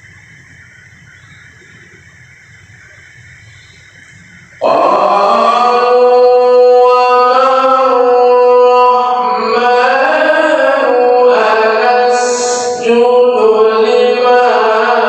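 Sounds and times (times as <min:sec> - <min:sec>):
man reciting melodically: 0:04.6 - 0:15.0.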